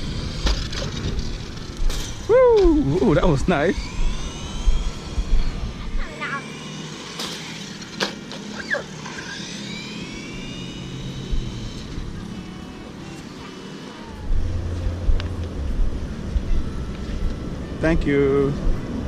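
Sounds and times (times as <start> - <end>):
low rumble: 0.0 - 6.1, 10.4 - 13.1, 14.1 - 19.0
small electric motors whining: 0.0 - 19.0.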